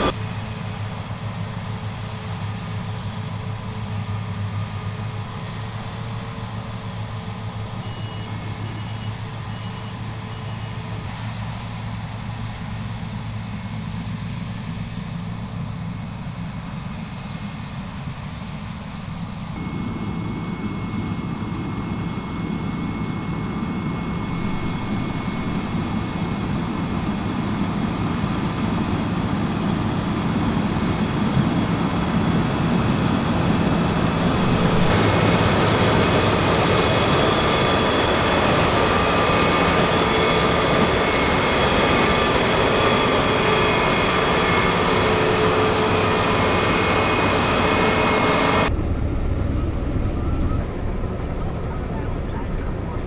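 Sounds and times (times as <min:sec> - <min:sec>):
threshing machinery: 0:19.6 - 0:48.7
combine harvester engine hum: 0:19.6 - 0:53.0.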